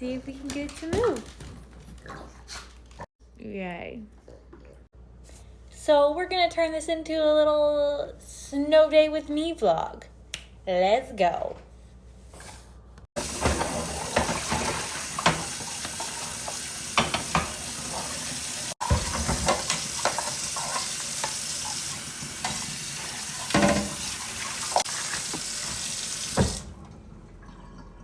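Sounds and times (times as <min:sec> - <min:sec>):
utensils and containers clinking: 0:13.2 - 0:25.8.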